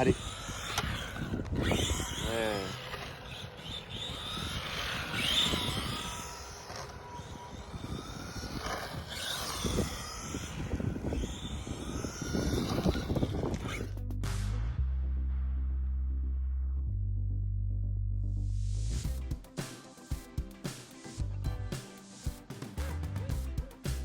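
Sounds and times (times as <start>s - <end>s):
rc car electric motor whining: 0.0s - 14.0s
music: 13.9s - 24.0s.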